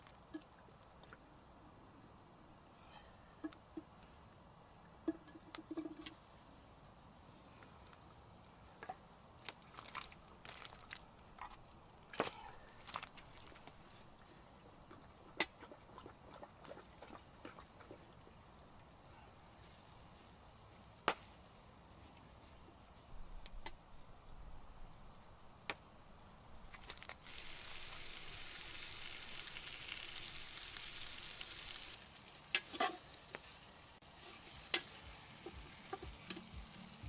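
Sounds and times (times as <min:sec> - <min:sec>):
meat sizzling in hot fat: 0:27.0 - 0:37.0.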